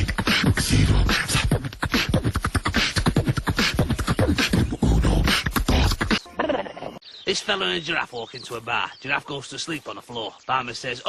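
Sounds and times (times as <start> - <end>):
person beatboxing: 0.0 - 6.2.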